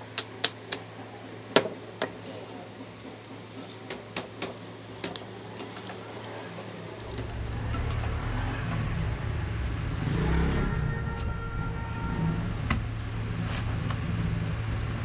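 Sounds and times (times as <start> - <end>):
welding transformer humming: 6.7 - 10.0.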